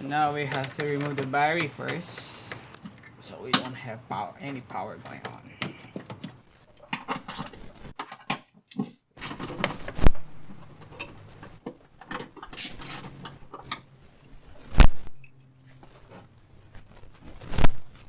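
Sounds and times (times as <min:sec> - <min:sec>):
hand tools clicking and rattling: 0:00.0 - 0:03.8, 0:10.5 - 0:13.9.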